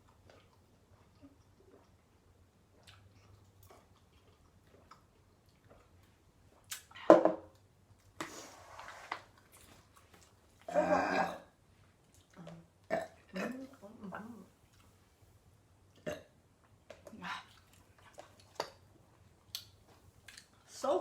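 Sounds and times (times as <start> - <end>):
quiet chewing: 0.0 - 10.7, 11.7 - 15.3, 15.9 - 20.7
person burping: 10.7 - 11.5, 12.9 - 13.6.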